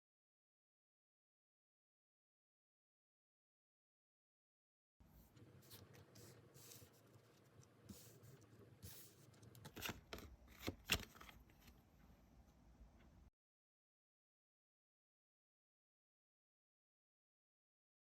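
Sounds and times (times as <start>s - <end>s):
cards rustling and sliding: 5.3s - 11.8s.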